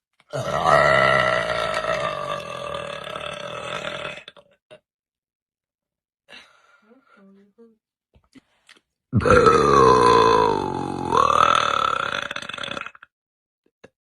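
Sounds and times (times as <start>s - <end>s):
person burping loudly: 0.2s - 4.8s, 9.2s - 13.1s.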